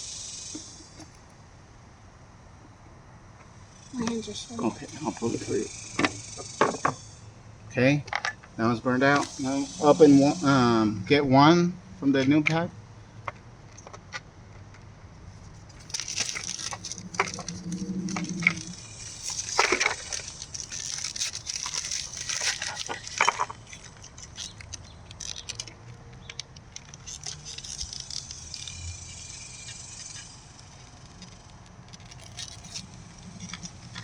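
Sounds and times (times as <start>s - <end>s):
packaging crinkling and rustling: 15.5s - 28.7s, 32.0s - 32.9s
small sharp clicks: 15.8s - 34.0s.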